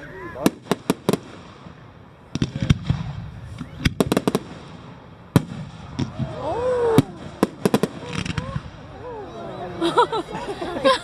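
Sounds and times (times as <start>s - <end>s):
fireworks banging: 0.4s - 9.0s.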